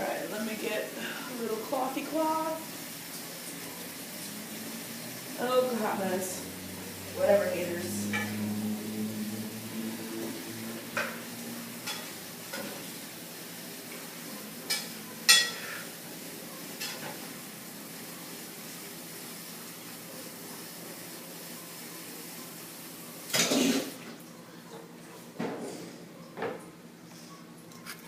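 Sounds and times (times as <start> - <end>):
chicken sizzling in a pot: 0.0 - 24.0
spoon clinking against pot: 14.7 - 15.6.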